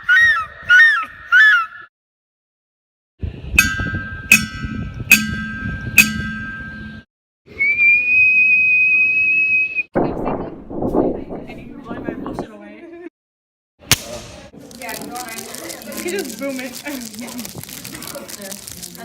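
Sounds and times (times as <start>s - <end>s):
sharp ringing strikes on object: 3.6s - 7.0s
steady high whistle: 7.5s - 9.9s.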